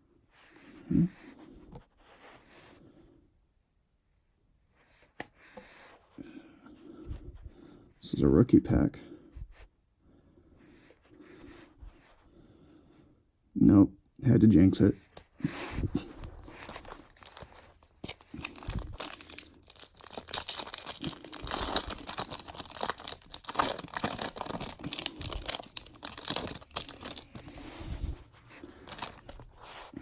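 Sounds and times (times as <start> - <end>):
foil wrapper tearing and crinkling: 16.0 - 29.9.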